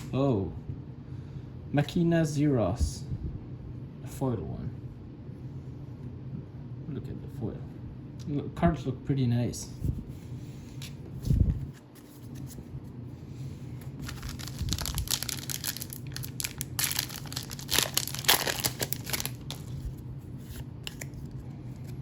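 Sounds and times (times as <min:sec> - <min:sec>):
foil wrapper tearing and crinkling: 0:14.0 - 0:20.0.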